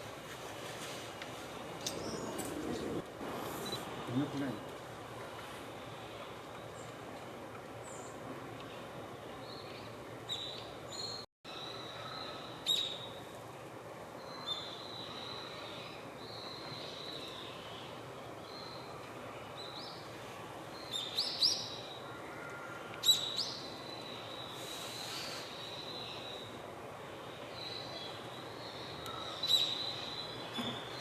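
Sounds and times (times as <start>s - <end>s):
outdoor background noise: 0.0s - 31.0s
bird chirping: 1.8s - 3.0s.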